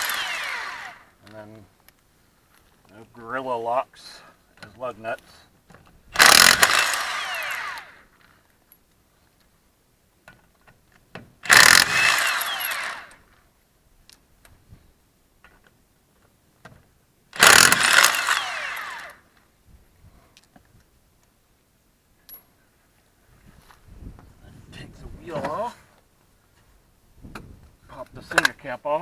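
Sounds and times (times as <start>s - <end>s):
impact wrench running: 0.0s - 1.1s, 6.2s - 8.0s, 11.4s - 13.2s, 17.4s - 19.2s.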